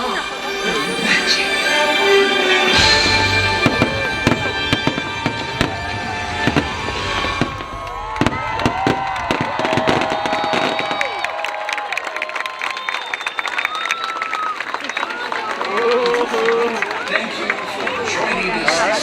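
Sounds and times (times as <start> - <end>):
music soundtrack: 0.0 - 8.4
fireworks bangs and crackles: 2.8 - 11.5.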